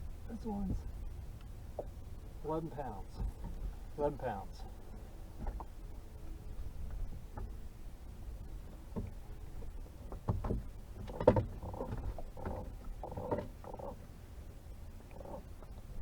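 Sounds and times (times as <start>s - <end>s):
knocks and thumps on a boat: 3.0s - 4.6s, 5.2s - 5.9s, 6.6s - 14.1s.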